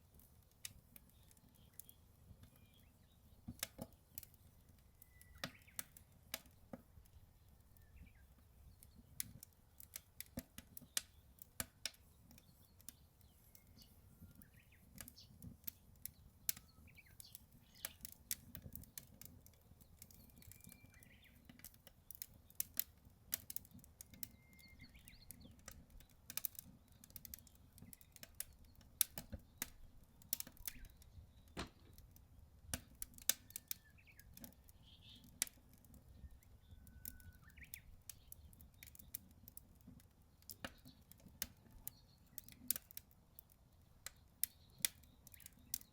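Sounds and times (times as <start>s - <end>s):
wood fire crackling: 0.0s - 45.9s
bird chirps: 5.0s - 5.9s, 12.4s - 15.4s, 16.6s - 18.0s, 20.1s - 21.5s, 24.3s - 25.6s, 30.6s - 31.8s, 33.5s - 35.3s, 36.1s - 38.5s.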